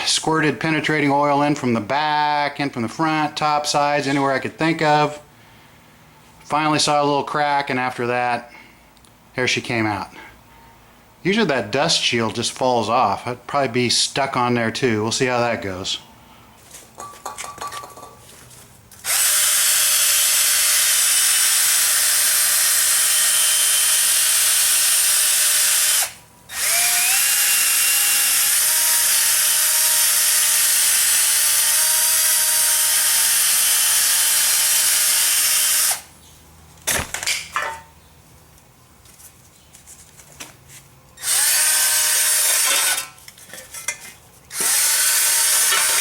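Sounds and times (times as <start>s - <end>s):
power tool wire brush scouring: 41.2s - 46.0s.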